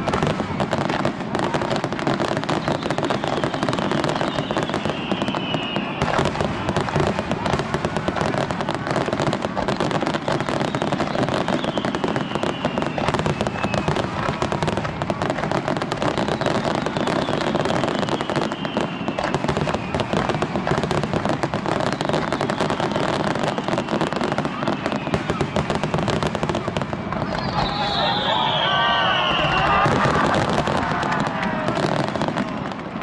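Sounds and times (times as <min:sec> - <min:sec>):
falling firework whistles: 0:00.0 - 0:07.6, 0:09.7 - 0:15.0, 0:16.0 - 0:20.8, 0:21.7 - 0:32.5
fireworks crackling and banging: 0:00.0 - 0:33.0.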